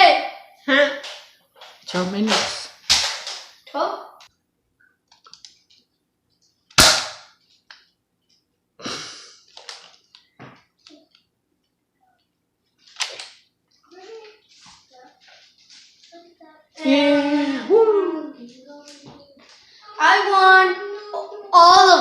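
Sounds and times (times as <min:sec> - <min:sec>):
toy blaster shots and dart hits: 0:02.3 - 0:03.5, 0:06.7 - 0:07.4.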